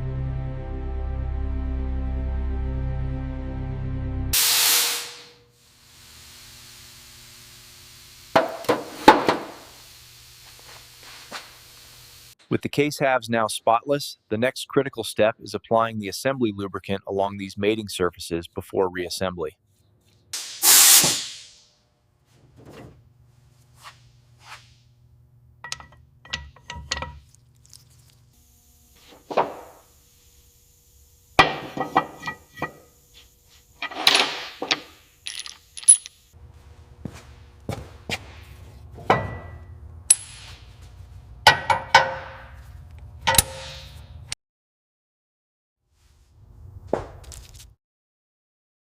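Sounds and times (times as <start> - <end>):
loud hiss: 4.4 - 6.7, 8.3 - 12.3, 20.4 - 21.6
metal tools clinking and knocking: 25.6 - 27.4, 33.8 - 36.2.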